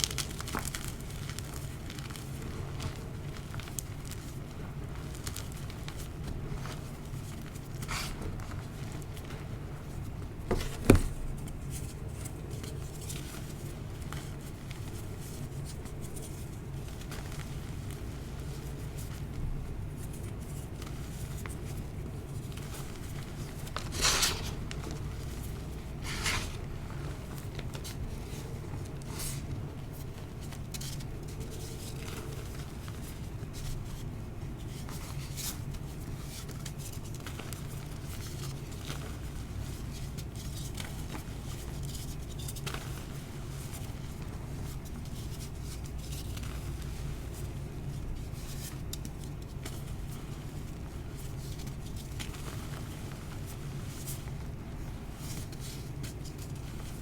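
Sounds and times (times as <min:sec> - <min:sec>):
chalk crunching under fingers: 0:23.9 - 0:24.9.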